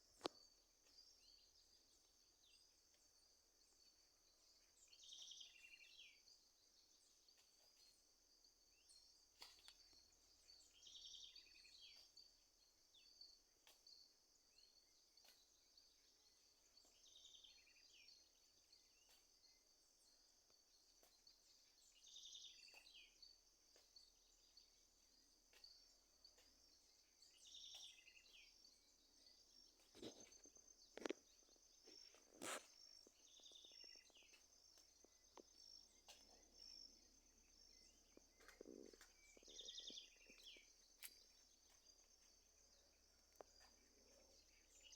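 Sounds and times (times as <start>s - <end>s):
bird chirping: 0.0s - 8.0s, 8.7s - 14.8s, 15.4s - 44.9s
insects trilling: 0.0s - 44.9s.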